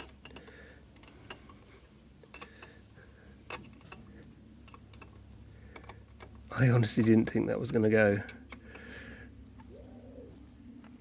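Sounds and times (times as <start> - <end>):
tools and metal parts clicking: 0.0 - 2.8, 3.4 - 7.3
faint low hum: 0.0 - 11.0.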